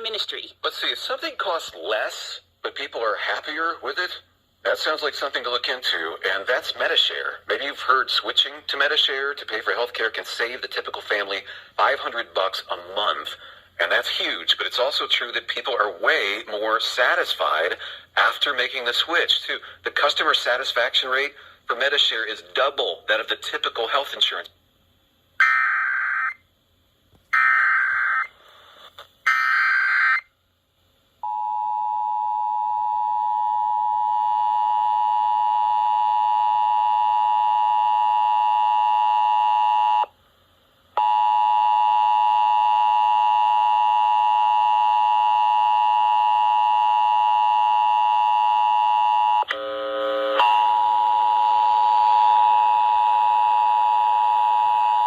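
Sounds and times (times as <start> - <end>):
screeching digital tones: 25.4 - 26.4, 27.3 - 28.4, 29.3 - 30.3.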